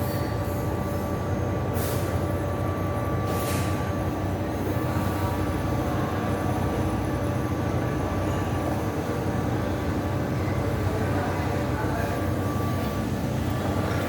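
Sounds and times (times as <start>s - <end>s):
low machine hum: 3.9s - 14.0s.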